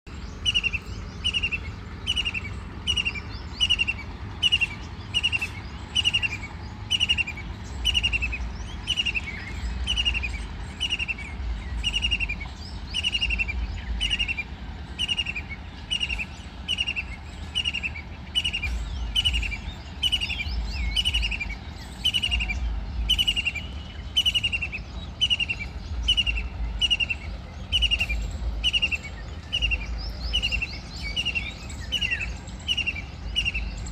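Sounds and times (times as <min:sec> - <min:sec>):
kingfisher calling: 0:00.1 - 0:33.9.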